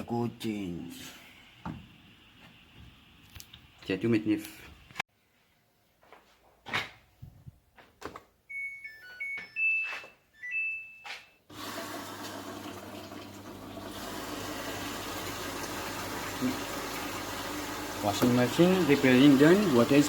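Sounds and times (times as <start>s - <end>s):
water running into machine: 11.5s - 20.0s.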